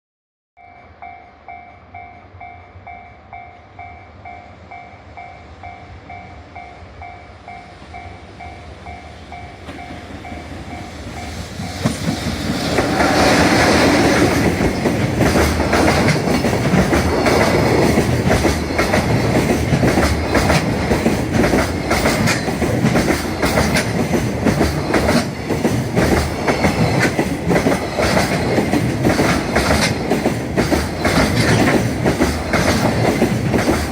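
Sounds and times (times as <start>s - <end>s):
level-crossing warning bell ringing: 0.6s - 12.5s
freight train passing: 0.6s - 33.9s
wheels clattering over rail joints: 11.7s - 33.9s.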